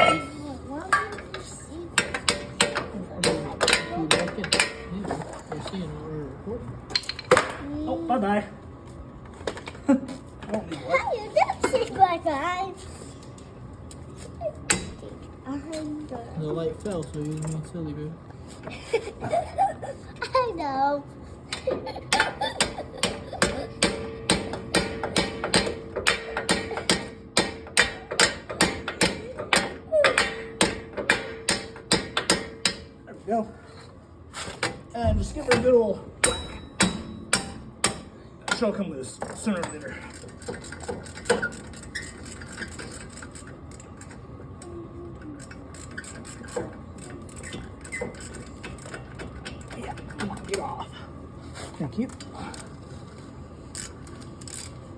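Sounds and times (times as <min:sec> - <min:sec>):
metallic ringing of hub: 0:35.5 - 0:38.7.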